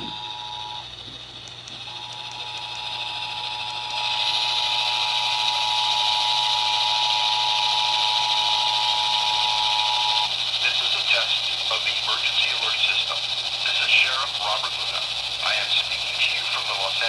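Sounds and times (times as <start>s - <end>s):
radio static hiss: 10.6s - 17.0s.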